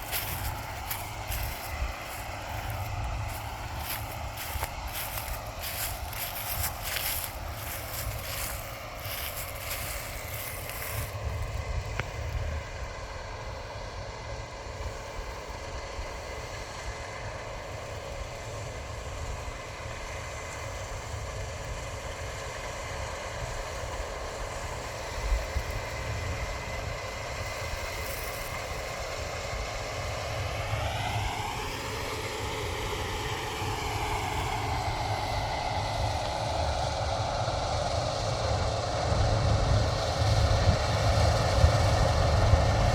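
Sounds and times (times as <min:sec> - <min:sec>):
heavy machinery running: 0:00.0 - 0:11.7.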